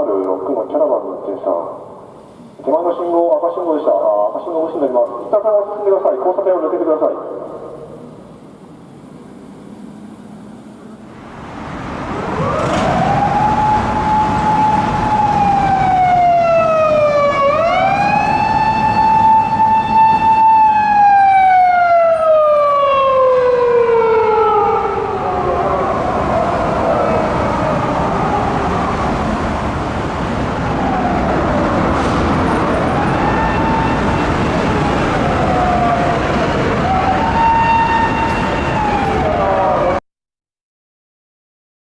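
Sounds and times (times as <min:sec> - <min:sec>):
road and engine noise: 0:00.0 - 0:40.0
police car siren wailing: 0:11.9 - 0:40.0.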